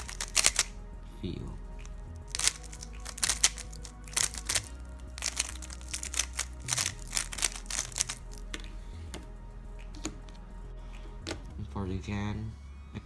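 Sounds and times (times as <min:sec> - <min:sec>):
plastic puzzle cube clicking: 0:00.0 - 0:00.8, 0:02.2 - 0:08.7
quiet background music: 0:00.0 - 0:13.0.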